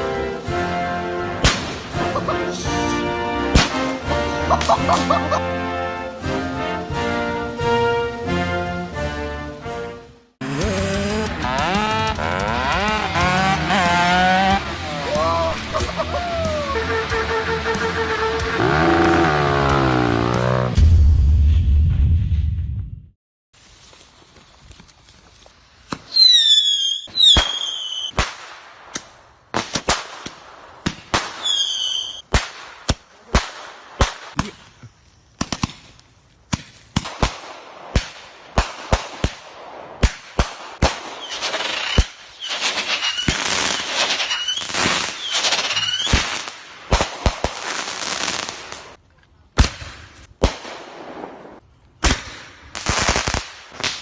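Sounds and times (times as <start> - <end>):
firework bangs and pops: 1.4 - 2.0, 3.5 - 4.0, 25.9 - 34.7, 35.4 - 49.0, 49.6 - 54.0
falling firework whistles: 25.9 - 28.2, 31.4 - 32.2, 41.1 - 46.5
firework crackling hiss: 40.9 - 49.0.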